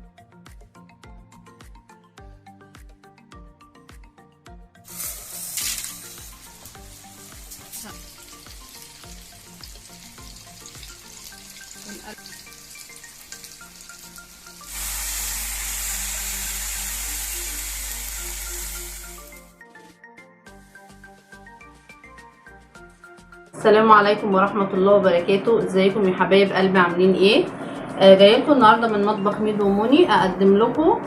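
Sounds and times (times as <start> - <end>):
background music: 0.0 - 31.0
food sizzling in hot oil: 4.9 - 19.5.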